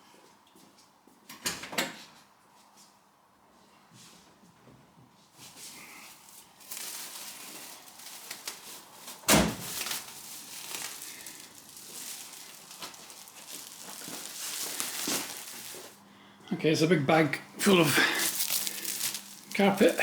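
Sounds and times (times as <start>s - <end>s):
bag rustling and crinkling: 5.7s - 16.0s, 17.6s - 20.0s.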